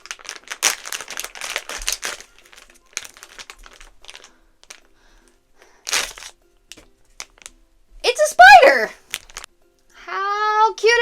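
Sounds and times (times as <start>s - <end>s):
plastic packaging crinkling: 0.0s - 7.5s, 9.0s - 9.5s.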